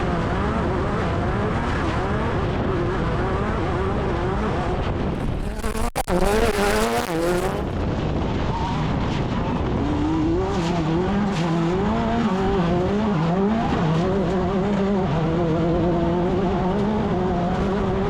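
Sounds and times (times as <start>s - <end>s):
race car engine revving: 5.1s - 7.8s.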